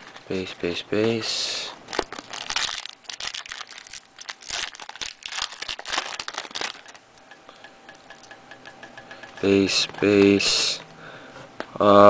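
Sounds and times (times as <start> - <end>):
foil wrapper crinkling: 0.0 - 7.0.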